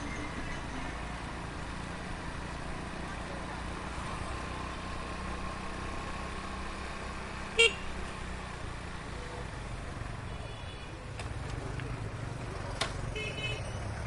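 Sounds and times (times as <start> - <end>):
heavy street traffic rumble: 0.0 - 14.0
car horn toot: 7.6 - 7.9, 13.1 - 13.7.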